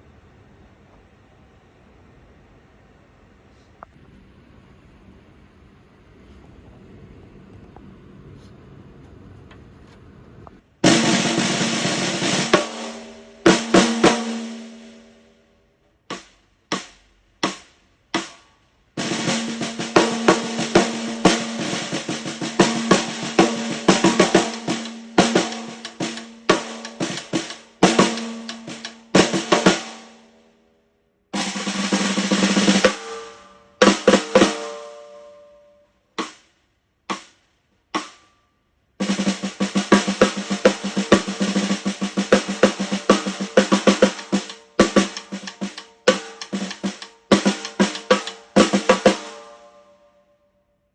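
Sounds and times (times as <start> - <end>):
snare drum rolls and hits: 10.8 - 15.2, 16.1 - 18.4, 19.0 - 30.3, 31.4 - 35.2, 36.2 - 36.4, 37.1 - 37.4, 38.0 - 38.2, 39.0 - 49.7.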